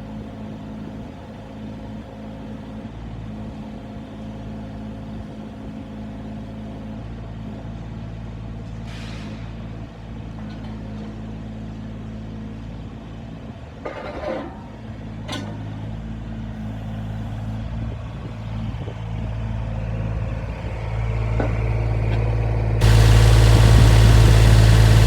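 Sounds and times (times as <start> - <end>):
diesel engine idling: 22.8 - 25.0.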